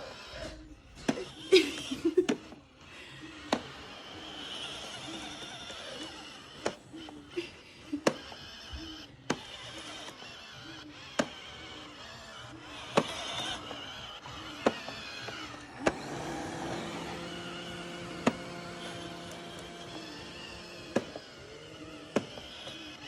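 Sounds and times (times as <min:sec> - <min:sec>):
robot vacuum motor hum: 0:00.0 - 0:23.0
pitched whine: 0:09.8 - 0:23.0.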